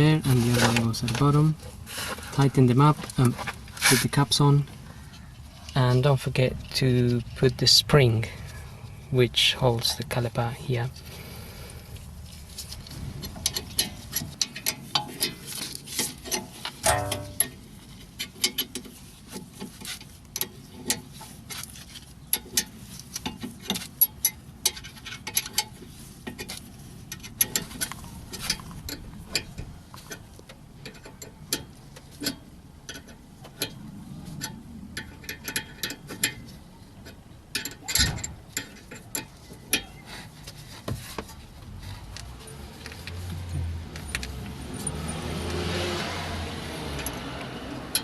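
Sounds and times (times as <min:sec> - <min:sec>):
tool and metal clinks: 0:16.8 - 0:17.6, 0:44.0 - 0:45.2.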